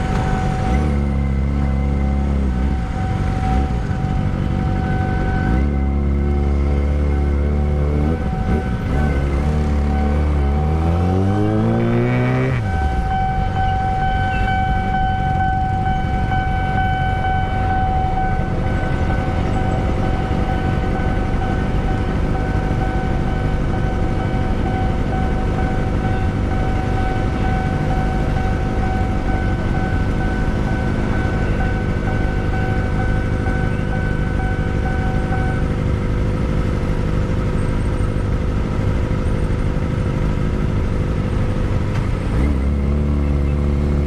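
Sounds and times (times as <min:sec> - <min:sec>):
motorcycle engine at high revs: 0:00.0 - 0:13.1, 0:37.5 - 0:44.0.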